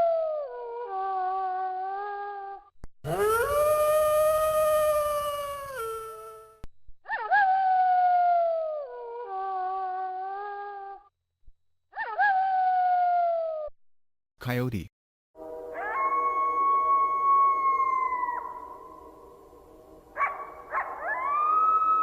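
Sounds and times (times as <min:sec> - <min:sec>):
wolf howling: 0:03.1 - 0:06.4, 0:15.7 - 0:19.3, 0:20.1 - 0:22.0.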